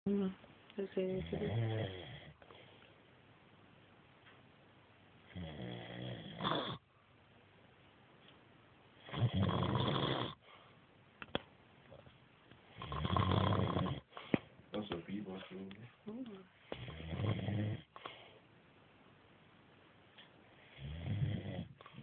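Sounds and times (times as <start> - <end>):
man snoring: 1.2 - 2.4, 5.3 - 6.8, 9.0 - 10.4, 12.8 - 14.1, 16.8 - 17.9, 20.7 - 21.8
quiet breathing: 1.3 - 3.1, 10.3 - 10.9, 11.9 - 18.6, 20.2 - 22.0.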